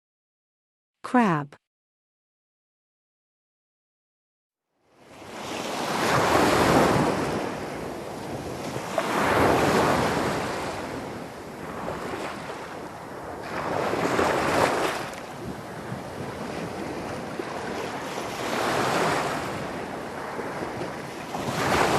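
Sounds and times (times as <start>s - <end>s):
ocean waves washing on shore: 4.9s - 21.9s.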